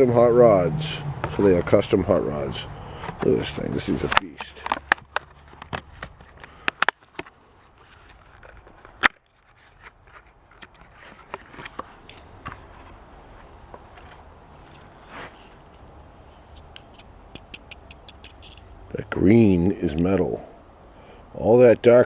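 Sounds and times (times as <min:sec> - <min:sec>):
plastic packaging crackling: 0:02.9 - 0:15.7
clicks and scrapes: 0:02.9 - 0:18.7
loud plastic snap: 0:04.0 - 0:07.3.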